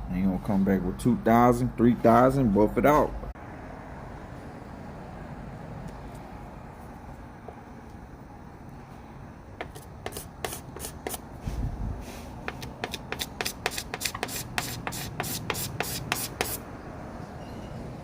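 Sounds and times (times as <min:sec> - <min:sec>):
scraping strokes on painted surface: 0:09.6 - 0:16.6.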